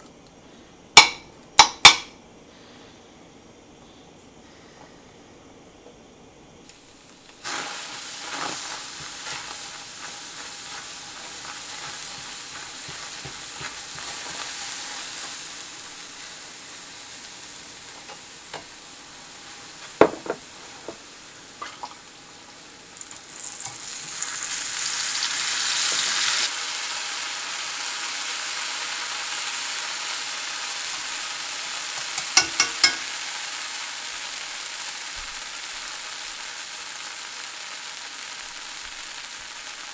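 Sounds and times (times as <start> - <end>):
food sizzling in hot oil: 6.6 - 39.9
utensil tapping against pan: 32.4 - 33.1.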